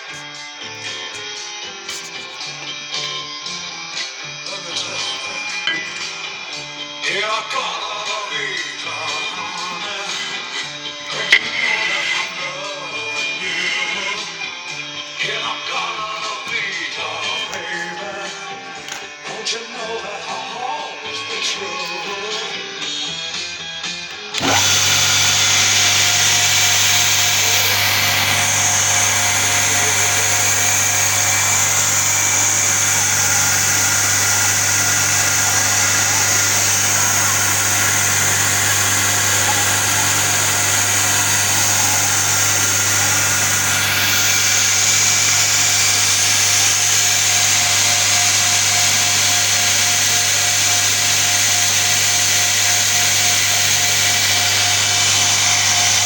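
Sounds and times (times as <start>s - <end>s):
belt grinder running: 5.0s - 6.6s, 9.2s - 14.9s, 24.4s - 56.0s.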